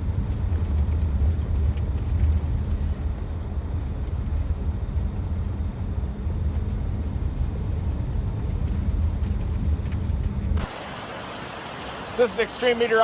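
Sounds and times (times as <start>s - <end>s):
waterfall roaring: 10.6s - 13.0s.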